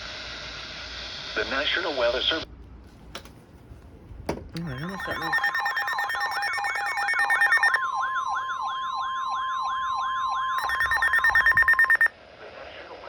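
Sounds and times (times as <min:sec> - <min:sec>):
steady alert tone: 0:04.6 - 0:12.1
sweeping siren-like alert tone: 0:04.6 - 0:12.1.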